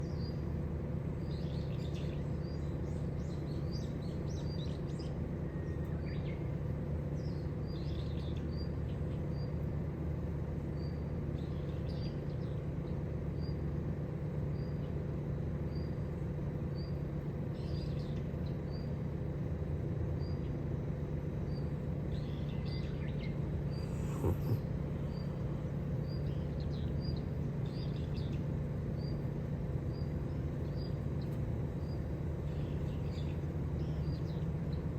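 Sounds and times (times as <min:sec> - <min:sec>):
low outdoor background hum: 0:00.0 - 0:34.9
small birds chirping: 0:21.4 - 0:34.9.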